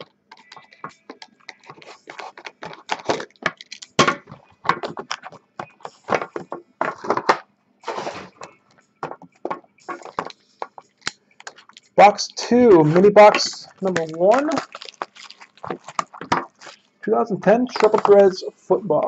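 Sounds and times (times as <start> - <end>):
cards and packaging rustling: 0.0 - 19.0.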